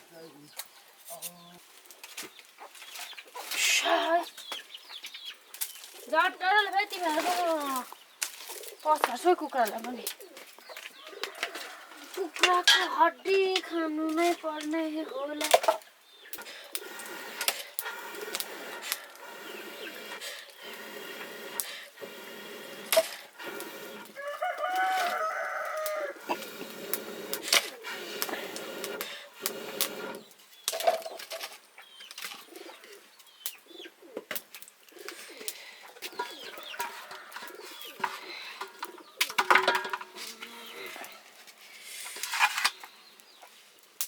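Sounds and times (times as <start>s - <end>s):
chickens clucking: 0.3s - 43.6s
drawn-out chicken call: 10.7s - 12.5s, 16.8s - 30.3s, 34.9s - 41.4s.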